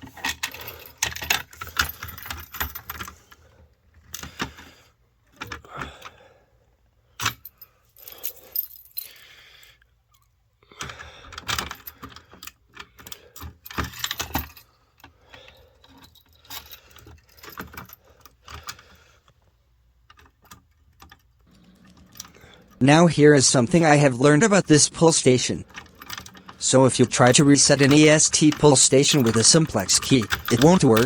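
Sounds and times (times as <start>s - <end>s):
keys jangling: 0.0s - 3.2s, 7.2s - 9.3s, 11.5s - 14.6s, 20.2s - 22.8s, 24.6s - 31.0s
key clicking and scraping in lock: 0.0s - 3.3s, 10.8s - 15.2s, 15.8s - 19.4s, 20.1s - 31.0s.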